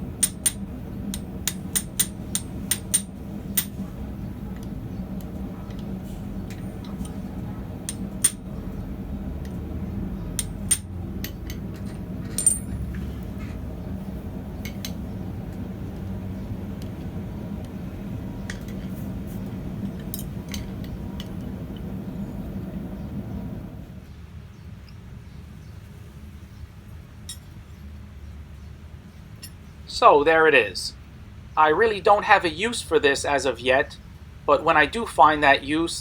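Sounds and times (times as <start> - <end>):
steady low hum: 0.0 - 26.7
metal latch parts clinking: 5.7 - 8.5, 10.3 - 13.6.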